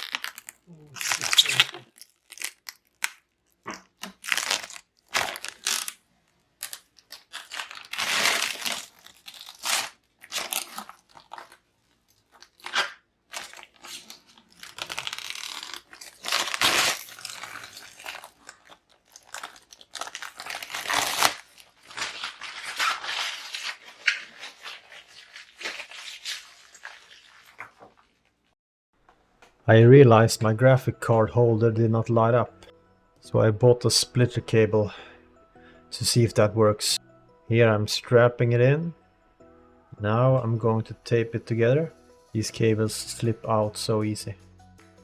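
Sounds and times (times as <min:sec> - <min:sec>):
plastic and cables rustling: 0:00.0 - 0:28.3.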